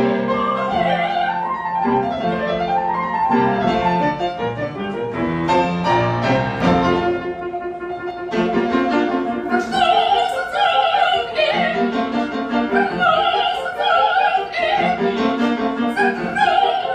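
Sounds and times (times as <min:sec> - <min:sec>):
piano accompaniment: 0:00.0 - 0:16.9
operatic singing with vibrato: 0:00.2 - 0:01.7, 0:09.4 - 0:16.9.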